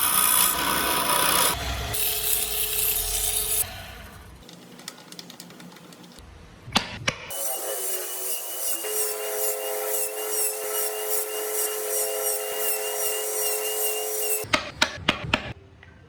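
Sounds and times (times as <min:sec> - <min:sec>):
power tool running on wood: 0:00.0 - 0:03.6.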